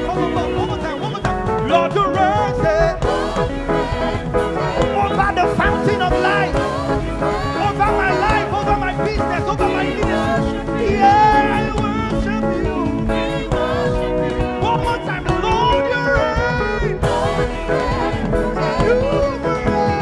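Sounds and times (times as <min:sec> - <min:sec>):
worship band playing: 0:00.0 - 0:20.0
wavering gliding vocals: 0:16.6 - 0:20.0.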